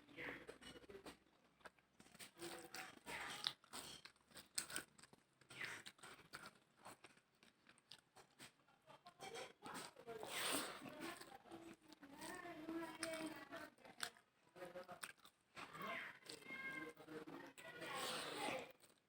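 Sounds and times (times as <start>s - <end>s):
person chewing: 1.0s - 8.6s, 9.6s - 13.4s, 14.8s - 16.4s, 17.9s - 19.0s.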